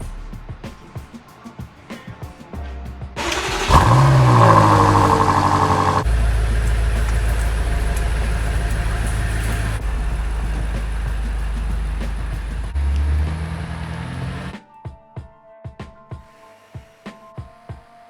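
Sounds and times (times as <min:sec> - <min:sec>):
car engine starting and idling: 0:03.2 - 0:14.5.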